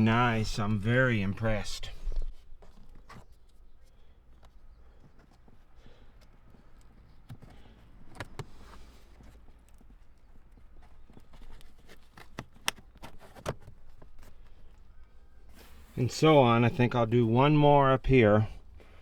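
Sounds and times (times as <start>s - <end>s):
rubber floor mat handled: 2.3s - 16.1s.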